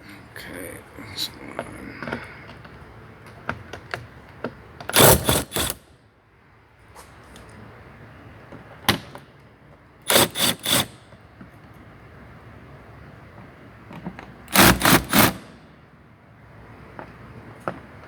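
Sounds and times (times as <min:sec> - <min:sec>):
impact wrench hammering: 0:10.1 - 0:10.9, 0:14.5 - 0:15.4.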